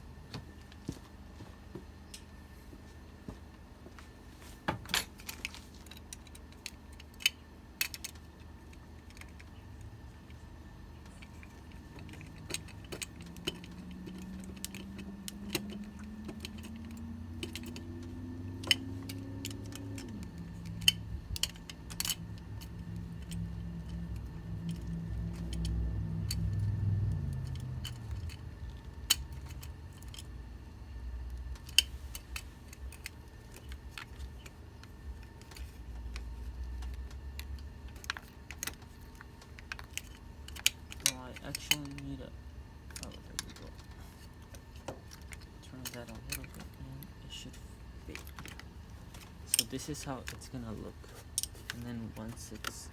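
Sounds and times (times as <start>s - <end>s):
metal tools clinking: 11.0s - 26.7s, 42.9s - 52.9s
low hum rising in pitch: 11.3s - 31.7s.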